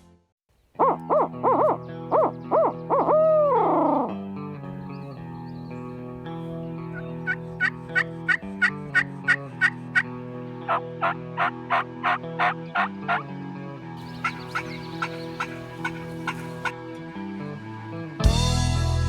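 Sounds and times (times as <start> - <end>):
music: 0.0 - 19.0
turkey yelps: 0.8 - 4.1, 7.2 - 8.7, 10.7 - 13.2, 14.0 - 16.8.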